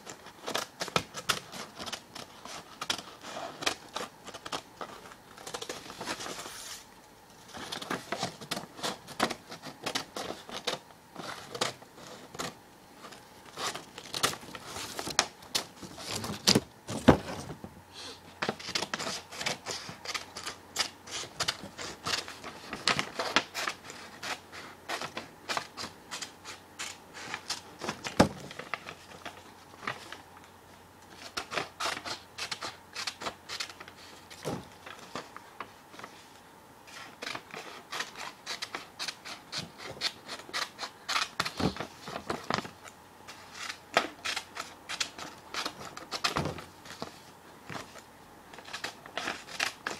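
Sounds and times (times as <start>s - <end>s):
paper rustling: 0.0s - 17.7s, 18.4s - 49.9s
scissors snipping paper: 31.2s - 34.5s, 36.9s - 42.7s, 43.5s - 46.4s.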